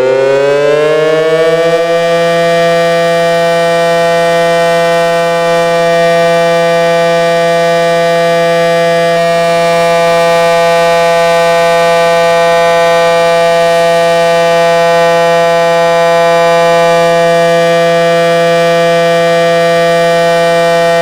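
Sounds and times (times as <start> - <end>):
loud steady warning siren: 0.0 - 21.0.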